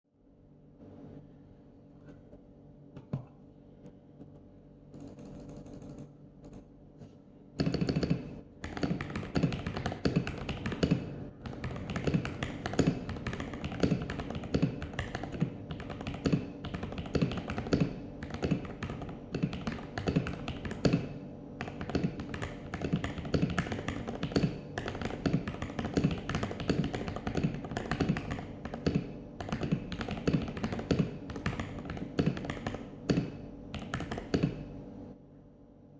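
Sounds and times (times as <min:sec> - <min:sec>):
typing on mechanical keyboard: 0:04.9 - 0:06.6, 0:07.6 - 0:34.6.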